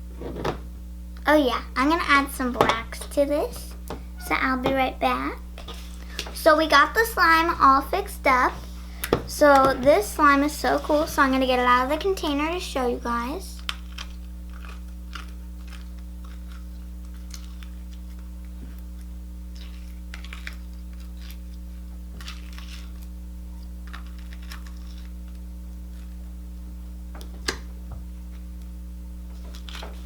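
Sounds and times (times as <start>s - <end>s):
steady electrical hum: 0.0s - 30.0s.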